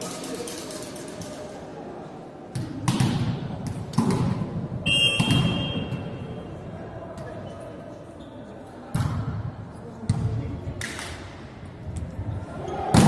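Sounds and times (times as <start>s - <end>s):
referee's whistle blowing: 4.9s - 6.0s
volleyball being struck: 5.0s - 6.0s.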